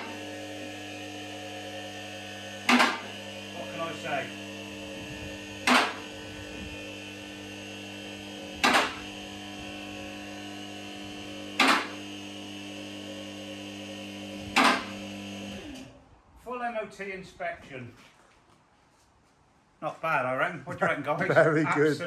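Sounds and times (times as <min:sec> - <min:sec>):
hydraulic pump motor humming: 0:00.0 - 0:16.0.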